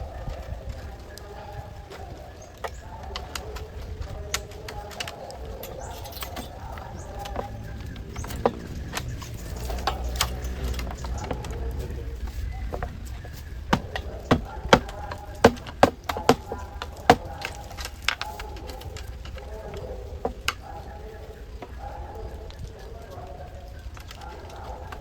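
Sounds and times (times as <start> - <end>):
hand tool knocking on material: 7.2 - 11.6, 12.7 - 17.6.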